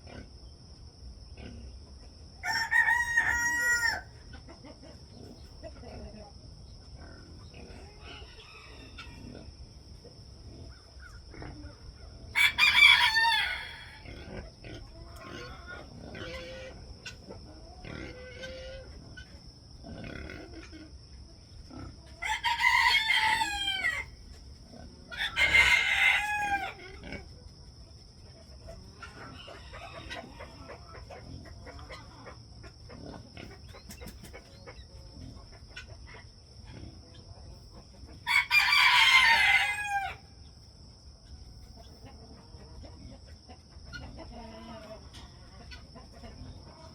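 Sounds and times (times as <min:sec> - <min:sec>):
chicken clucking: 0:01.6 - 0:46.9
rooster crowing: 0:02.4 - 0:04.2, 0:08.0 - 0:09.2, 0:12.3 - 0:14.2, 0:22.2 - 0:24.2, 0:25.1 - 0:26.8, 0:38.2 - 0:40.3.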